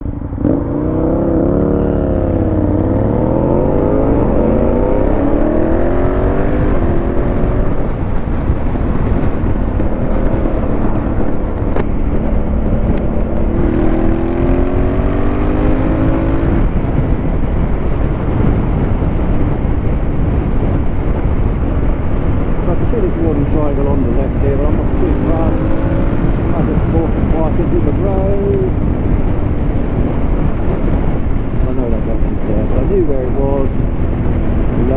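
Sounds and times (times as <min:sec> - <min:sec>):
motorcycle accelerating through gears: 0:00.0 - 0:34.9.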